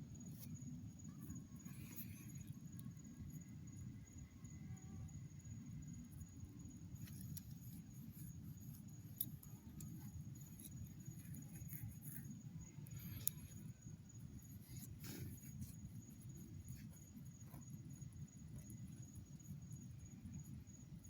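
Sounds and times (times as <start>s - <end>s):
small clicks and crackles: 0.2s - 3.0s, 7.0s - 20.5s.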